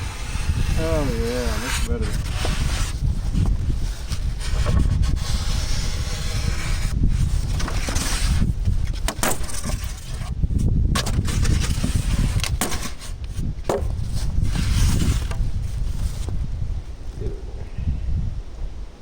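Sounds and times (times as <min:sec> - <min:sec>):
wind buffeting microphone: 0:00.0 - 0:19.0
knife cutting foam board: 0:00.4 - 0:10.3.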